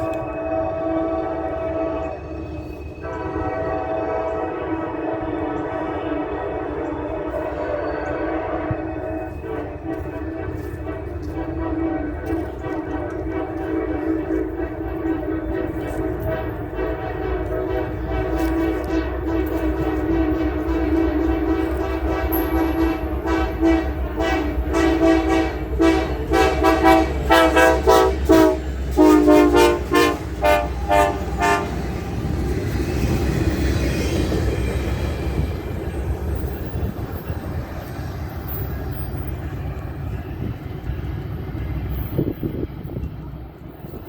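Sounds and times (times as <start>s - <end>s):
train horn short blasts: 0.0s - 2.4s, 3.0s - 32.0s
train low rumble: 0.0s - 44.0s.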